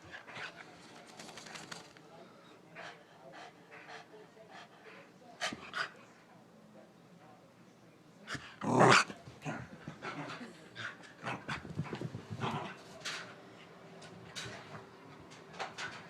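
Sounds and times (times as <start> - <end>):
dog growling in play: 8.6 - 10.4.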